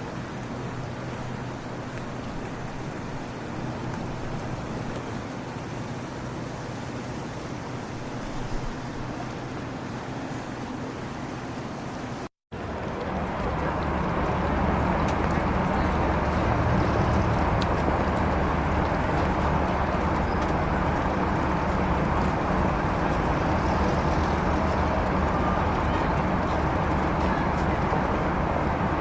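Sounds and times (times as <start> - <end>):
street traffic with engine rumble: 0.0 - 29.0.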